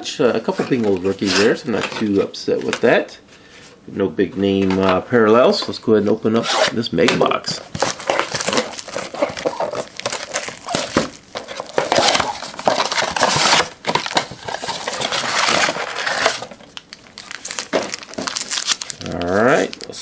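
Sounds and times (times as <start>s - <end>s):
packaging tearing and crinkling: 7.7s - 20.0s.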